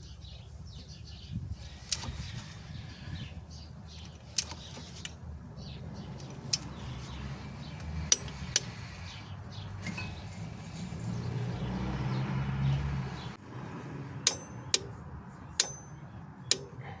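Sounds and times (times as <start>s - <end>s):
metal tools clinking: 6.1s - 8.8s, 9.8s - 11.4s.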